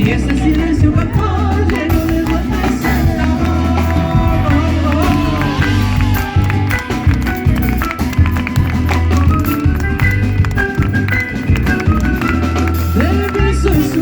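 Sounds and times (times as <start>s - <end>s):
person singing: 0.0s - 7.5s, 12.9s - 14.0s
bass: 0.0s - 14.0s
guitar: 0.0s - 14.0s.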